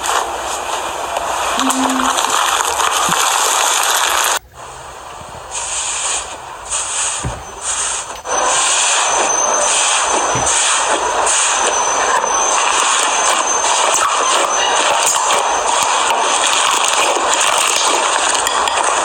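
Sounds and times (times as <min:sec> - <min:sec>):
slime squeezed crackling hiss: 0:01.5 - 0:04.4.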